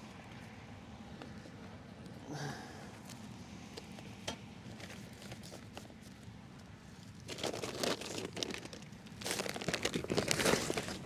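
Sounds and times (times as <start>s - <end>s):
newspaper and sugar crinkling: 7.2s - 11.0s.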